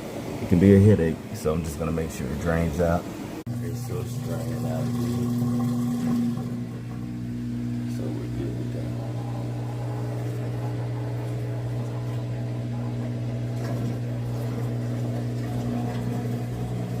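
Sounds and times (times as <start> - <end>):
washing machine drain pump humming: 0.0 - 17.0.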